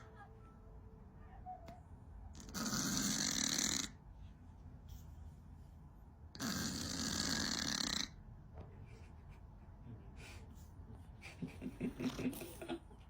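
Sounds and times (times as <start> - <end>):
cat snoring: 2.4 - 4.0, 6.4 - 8.2.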